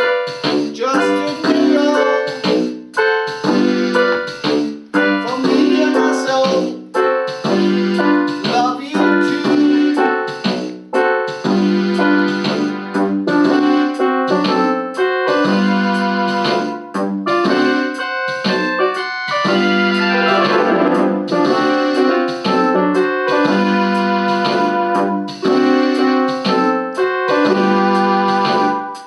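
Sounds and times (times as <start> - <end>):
electronic keyboard piano chords: 0.0 - 29.0.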